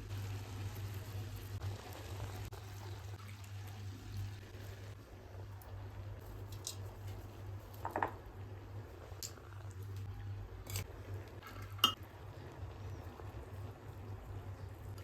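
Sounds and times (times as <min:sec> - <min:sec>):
utensils clinking against pot: 0:10.7 - 0:12.0.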